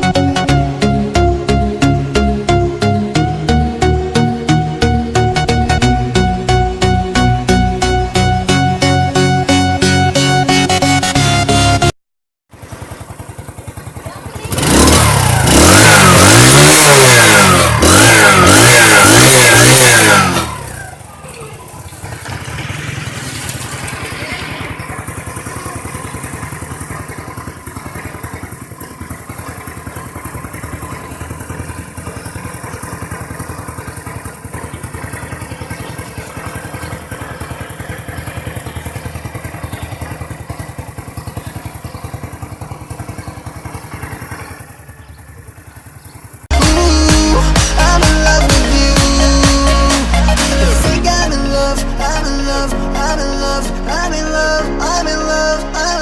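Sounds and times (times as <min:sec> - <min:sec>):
motorcycle engine revving: 0:00.0 - 0:55.0
motorcycle engine idling: 0:12.5 - 0:55.2.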